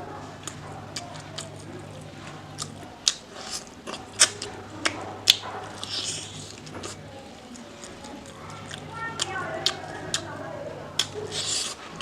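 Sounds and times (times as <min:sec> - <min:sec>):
person chewing food: 0:00.3 - 0:12.0.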